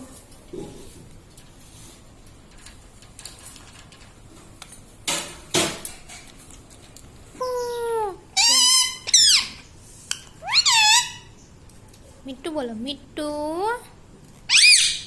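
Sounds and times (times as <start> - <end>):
parrot harsh noisy bursts: 10.4 - 11.3
parrot falling pitched call: 14.5 - 15.0.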